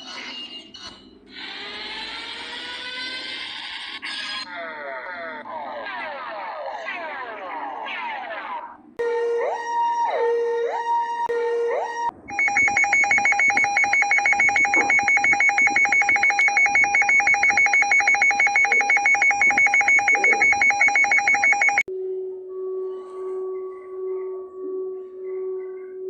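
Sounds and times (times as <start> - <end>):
two-note alarm tone: 9.0 - 21.8
rapid pulsing alarm tone: 9.0 - 21.9.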